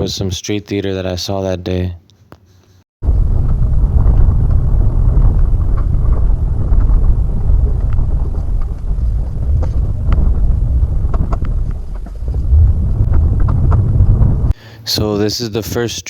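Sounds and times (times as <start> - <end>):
car engine and road rumble: 3.0 - 14.5.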